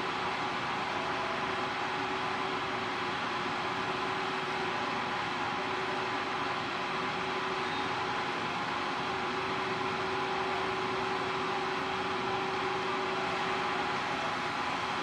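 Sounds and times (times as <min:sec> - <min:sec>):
machinery hum: 0:00.0 - 0:15.0.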